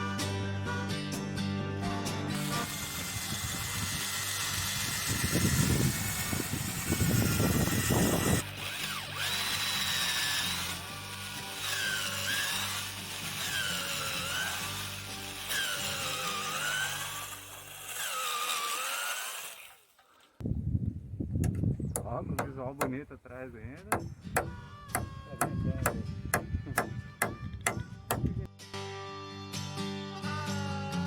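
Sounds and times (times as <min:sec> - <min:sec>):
background music: 0:00.0 - 0:02.7
power tool cutting wood: 0:02.3 - 0:20.1.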